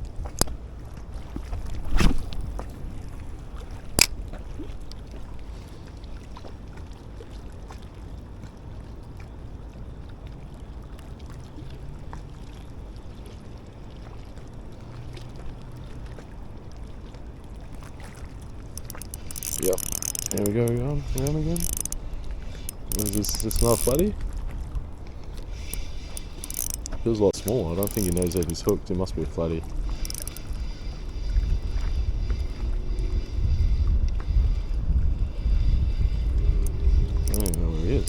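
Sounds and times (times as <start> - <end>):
sharp click: 4.0 - 4.2, 18.8 - 24.0, 25.5 - 28.8, 29.9 - 30.5, 36.6 - 38.0
low outdoor rumble: 20.4 - 38.0.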